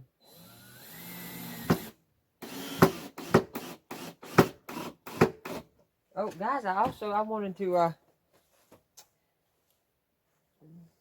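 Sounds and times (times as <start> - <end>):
power drill driving screws: 0.2 - 5.7.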